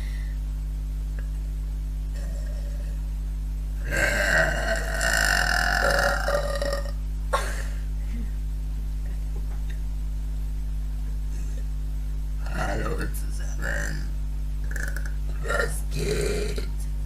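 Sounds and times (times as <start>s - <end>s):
woman burping: 3.8s - 7.8s, 14.7s - 16.7s.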